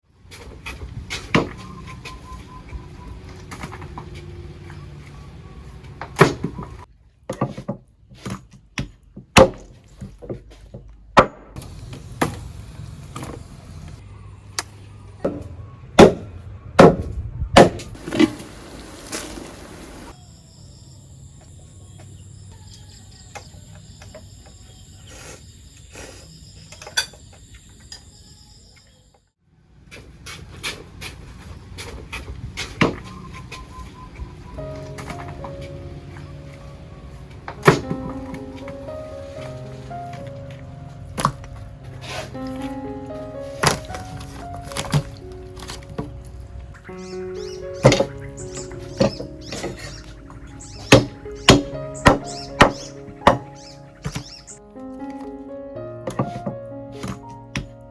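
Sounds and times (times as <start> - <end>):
chopping strikes: 16.0 - 18.4, 37.6 - 38.1, 50.8 - 53.5.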